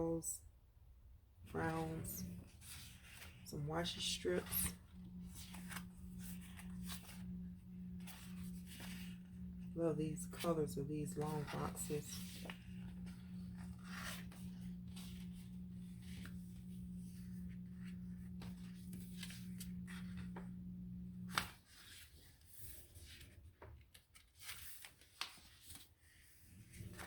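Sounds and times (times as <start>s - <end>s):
steady low hum: 1.2s - 21.6s
paper pages rustling: 1.5s - 27.0s.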